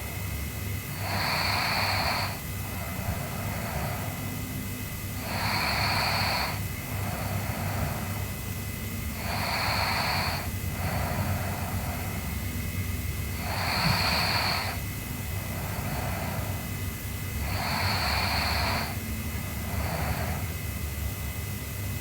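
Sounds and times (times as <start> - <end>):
girl snoring: 0.9 - 12.5, 13.2 - 20.7
steady low rumble: 2.4 - 9.4.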